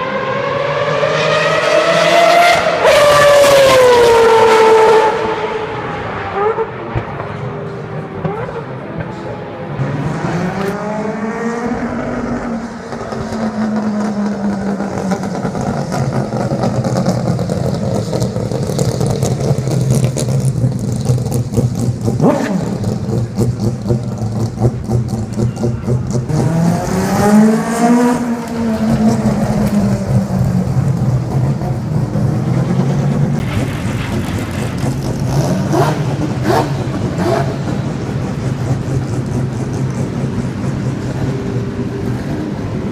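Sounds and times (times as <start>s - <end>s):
rotary race car engine running: 10.0s - 42.9s.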